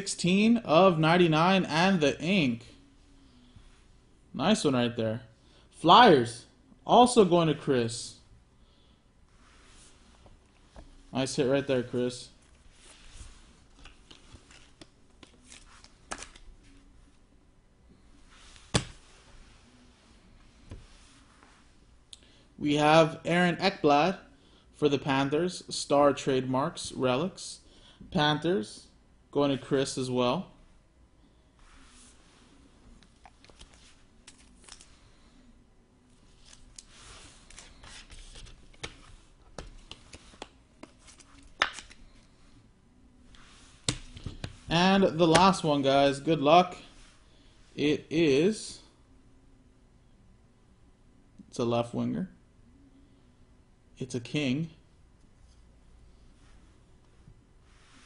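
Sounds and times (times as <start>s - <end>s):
trading cards rustling and tapping: 13.8s - 16.4s, 36.4s - 42.2s.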